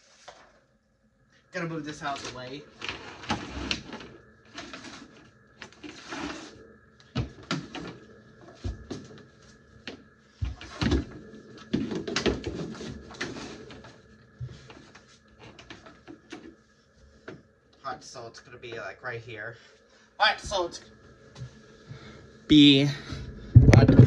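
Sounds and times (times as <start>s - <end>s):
faint steady hum: 0.0s - 24.0s
household objects knocking and clattering: 23.6s - 24.0s.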